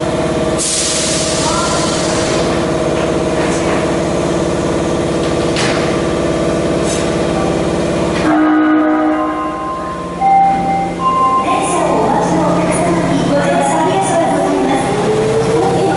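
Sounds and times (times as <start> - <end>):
buzzy train horn blast: 8.2 - 10.1.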